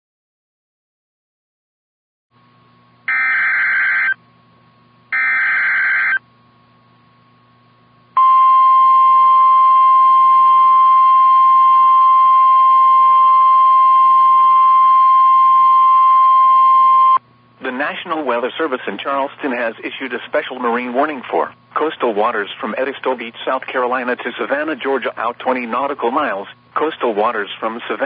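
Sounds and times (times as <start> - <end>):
data tone bursts: 3.1 - 4.2
steady warning alarm tone: 3.1 - 4.2, 5.1 - 6.2.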